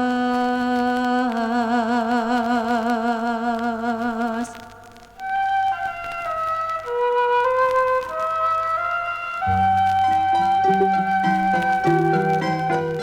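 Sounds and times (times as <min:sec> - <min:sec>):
person singing slow song: 0:00.0 - 0:05.8.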